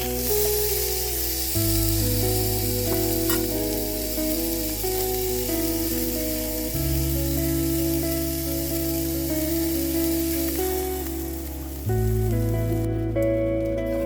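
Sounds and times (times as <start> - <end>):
background music: 0.0 - 14.0
food sizzling in a frying pan: 0.0 - 14.0.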